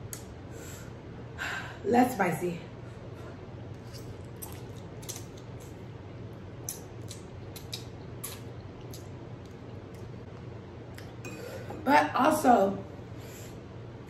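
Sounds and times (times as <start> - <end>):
steady low hum: 0.0 - 14.0
soft chewing: 3.7 - 5.9, 6.6 - 11.2
wet mouth sounds: 3.8 - 5.8, 6.6 - 10.1.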